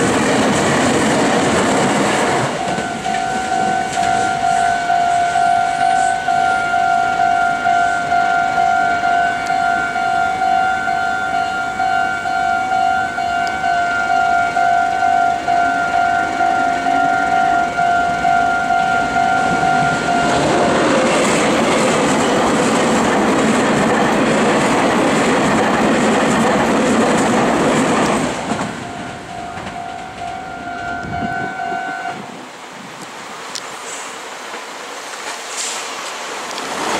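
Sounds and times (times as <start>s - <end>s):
electric train passing: 0.0s - 36.9s
level crossing warning bell: 2.4s - 21.2s, 28.5s - 32.2s.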